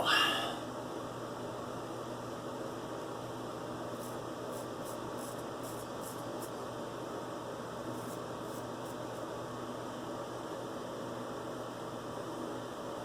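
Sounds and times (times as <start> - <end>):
steady background hiss: 0.0 - 13.0
razor scraping stubble: 4.0 - 6.6, 8.0 - 9.2.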